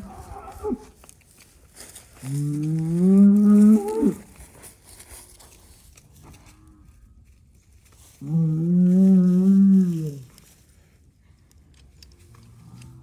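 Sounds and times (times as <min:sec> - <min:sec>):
bull bellowing: 0:00.0 - 0:00.9, 0:02.3 - 0:04.3.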